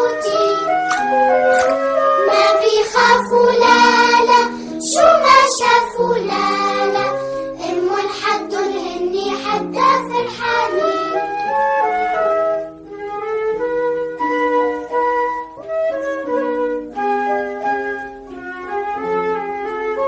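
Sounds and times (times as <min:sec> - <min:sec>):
child singing: 0:00.0 - 0:01.0, 0:02.2 - 0:11.5
instrumental backing notes: 0:00.0 - 0:20.0.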